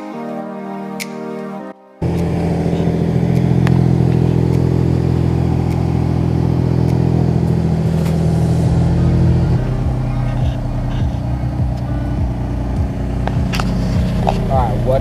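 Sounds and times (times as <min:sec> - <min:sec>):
car engine running steadily: 0:02.0 - 0:15.0.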